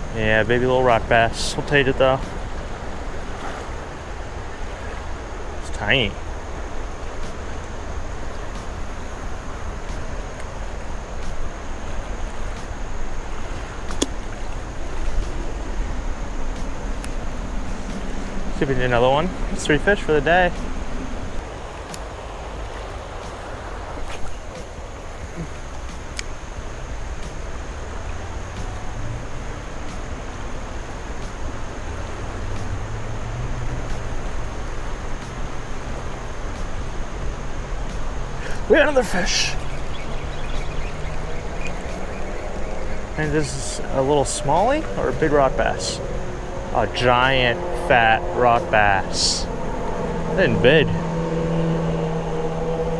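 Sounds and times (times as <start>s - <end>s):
even hiss: 0.0s - 52.9s
flowing river water: 0.0s - 52.9s
faint high steady tone: 38.4s - 52.9s
low rumble: 39.5s - 52.9s.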